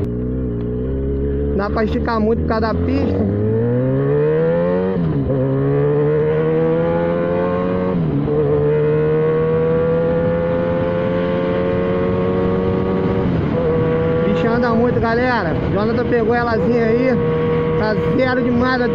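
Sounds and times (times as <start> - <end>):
motorcycle engine accelerating: 0.0 - 18.9.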